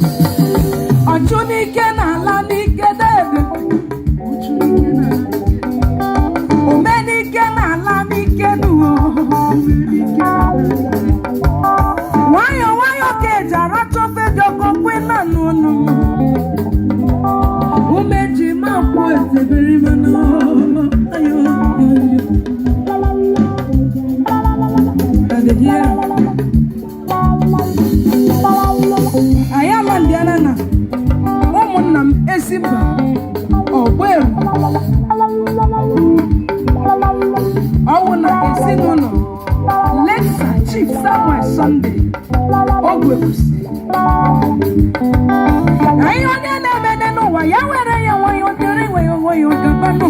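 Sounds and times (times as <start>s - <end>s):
drum beat: 0.0s - 13.6s, 14.2s - 46.7s
person singing: 0.0s - 30.4s, 36.8s - 44.5s, 45.5s - 50.0s
plucked guitar: 0.0s - 50.0s
keyboard organ-like chords: 3.2s - 6.9s, 7.7s - 12.4s, 15.5s - 46.1s.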